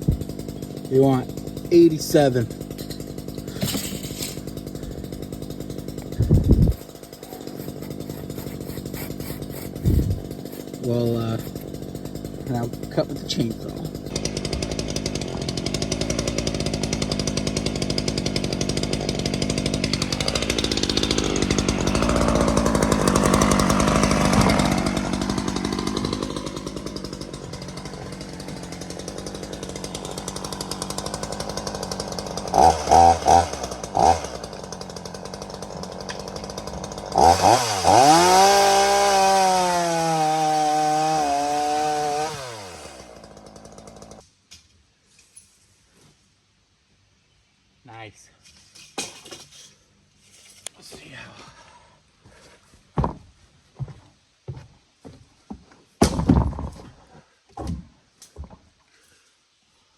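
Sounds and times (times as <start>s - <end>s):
chainsaw cutting log: 0.0s - 44.3s, 56.0s - 59.1s.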